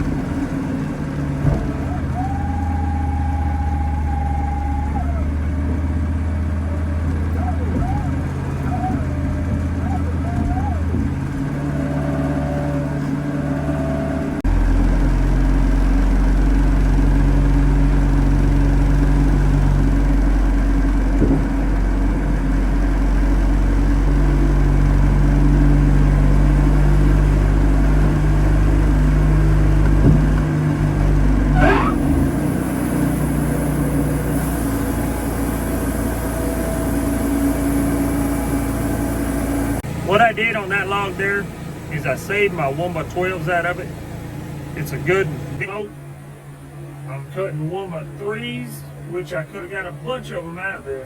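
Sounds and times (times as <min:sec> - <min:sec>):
band sawmill cutting: 0:00.0 - 0:50.5
short rising squeal: 0:01.6 - 0:06.2, 0:06.8 - 0:15.4, 0:23.8 - 0:39.8.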